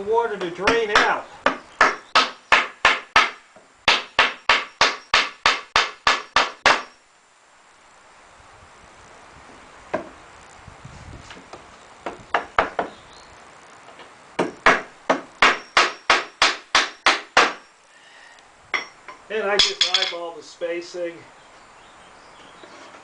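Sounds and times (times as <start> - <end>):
hammer striking nail into wood: 0.7 - 6.9, 14.4 - 17.6.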